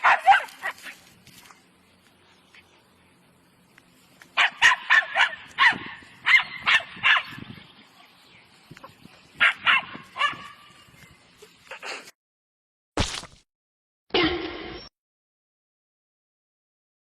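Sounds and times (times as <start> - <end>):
dog yipping: 0.0 - 1.0, 4.4 - 7.4, 9.4 - 10.7.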